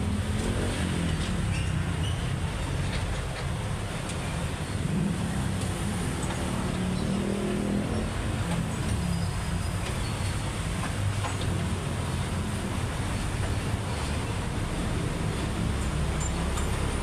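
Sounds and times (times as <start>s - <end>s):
traffic rumble: 0.0s - 17.0s.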